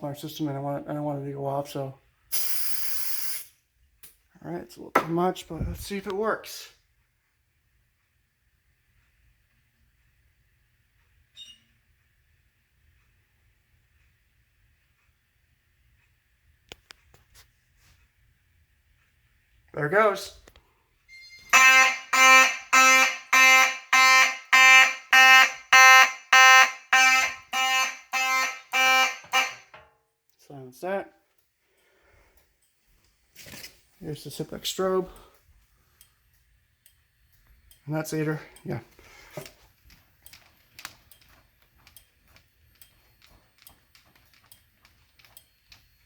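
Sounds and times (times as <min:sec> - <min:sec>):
fire alarm horn blasts: 0:21.1 - 0:29.8.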